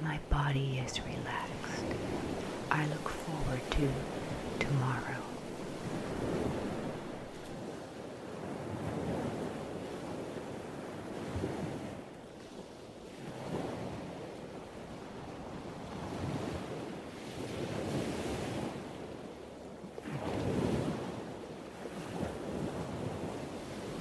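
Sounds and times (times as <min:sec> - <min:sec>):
ocean waves breaking: 0:00.0 - 0:12.0.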